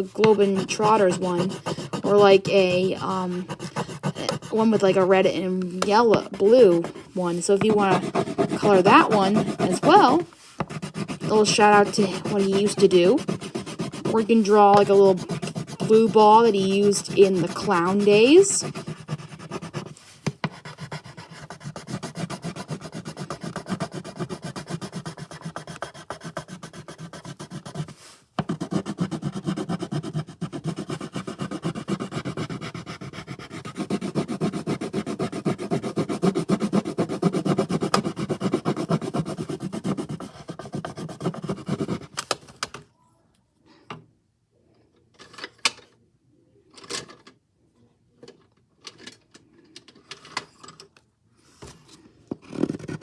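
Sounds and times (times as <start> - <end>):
scribbling on paper: 0.0 - 42.2.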